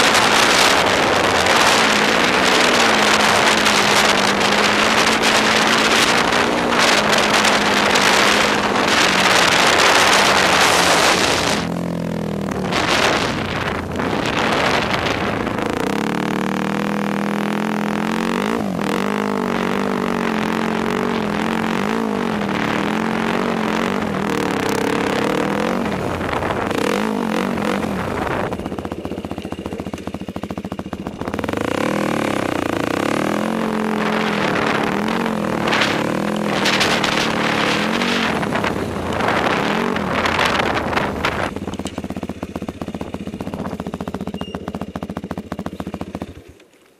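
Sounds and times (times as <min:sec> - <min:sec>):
quad bike engine revving: 0:00.0 - 0:46.7.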